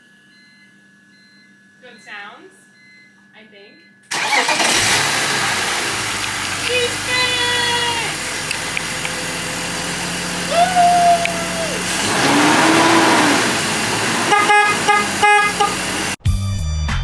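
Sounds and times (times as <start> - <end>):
car engine running: 4.1 - 16.2
car horn toots: 4.1 - 16.2.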